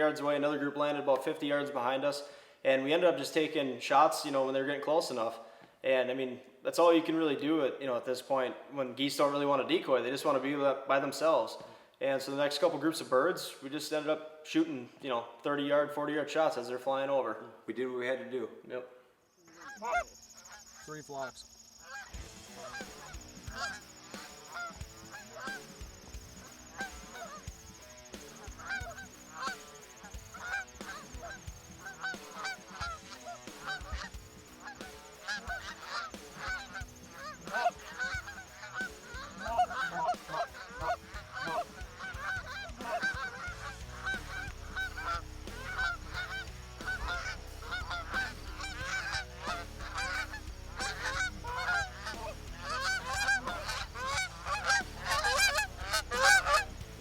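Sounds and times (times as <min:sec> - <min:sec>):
geese honking: 0:19.4 - 0:57.0.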